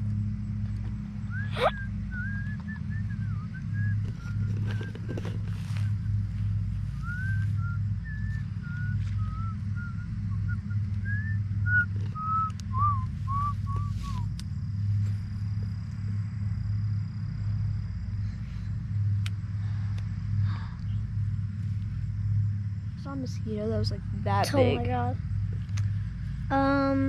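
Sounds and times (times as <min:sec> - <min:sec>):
low hum: 0:00.0 - 0:27.0
short whistled notes: 0:07.0 - 0:14.3.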